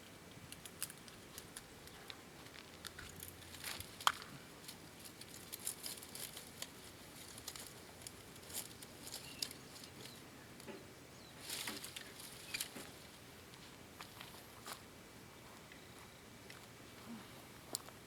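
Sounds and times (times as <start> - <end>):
dry twigs crackling: 0.5 - 10.7, 11.3 - 13.2.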